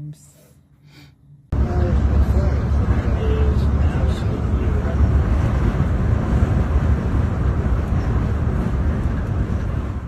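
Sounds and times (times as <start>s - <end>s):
wind buffeting microphone: 1.5s - 10.0s.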